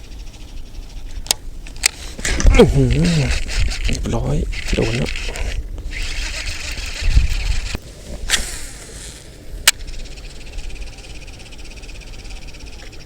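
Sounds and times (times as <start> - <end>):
wind buffeting microphone: 0.0 - 11.5
sharp clicks: 1.2 - 8.7, 9.6 - 10.3
high chirring: 1.7 - 12.8.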